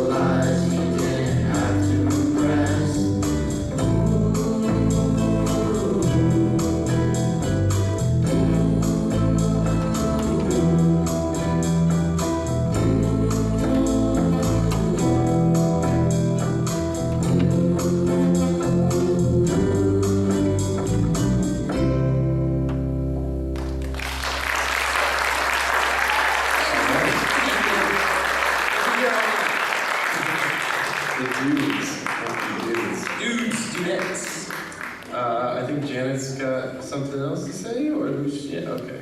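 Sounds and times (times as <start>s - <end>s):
live band music: 0.0s - 35.8s
audience applause: 23.6s - 35.3s.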